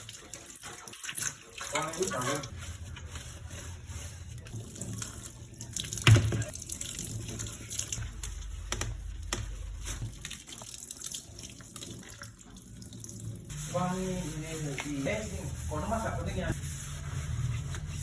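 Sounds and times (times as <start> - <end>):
tap water running into sink: 4.5 - 13.5
items clattering against sink: 6.0 - 6.6.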